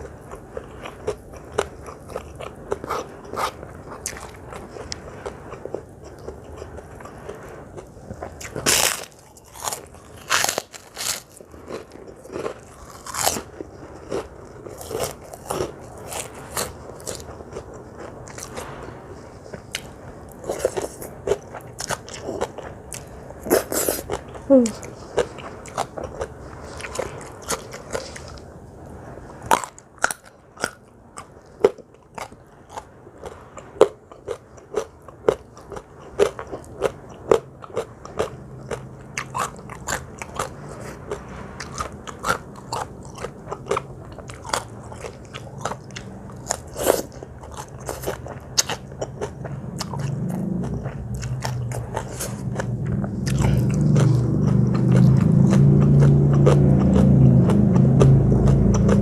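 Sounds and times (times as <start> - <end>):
person chewing crunchy food: 0.0 - 28.6, 29.3 - 59.0
low rumble: 48.2 - 59.0.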